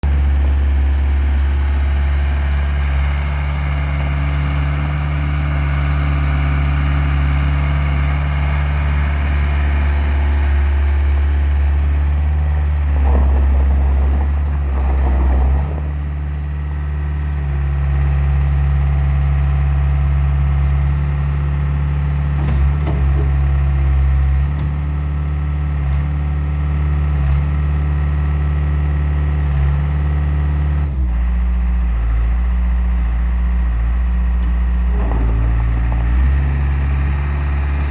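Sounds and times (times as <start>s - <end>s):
diesel engine running: 0.0s - 37.9s.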